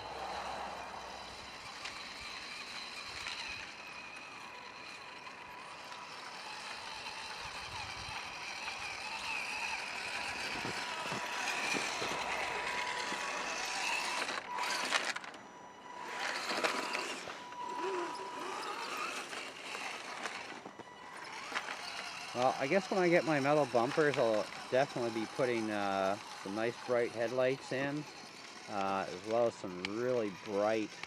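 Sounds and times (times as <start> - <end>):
toy car electric motor whining: 0.0 - 31.0.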